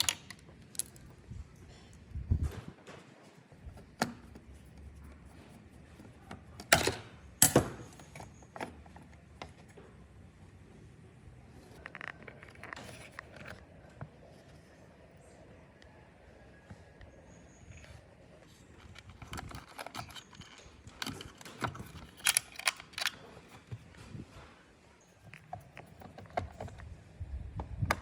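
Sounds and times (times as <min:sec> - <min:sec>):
small parts and tools clattering: 0:00.0 - 0:01.1, 0:11.6 - 0:13.7, 0:18.5 - 0:24.3
scraping handling noise: 0:11.4 - 0:15.4, 0:17.3 - 0:27.0.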